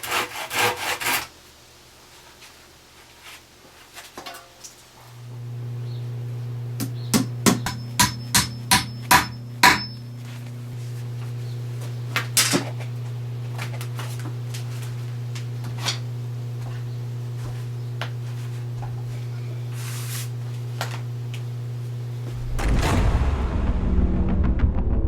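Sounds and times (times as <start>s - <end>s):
steady low hum: 5.2s - 25.0s
music: 22.4s - 25.0s.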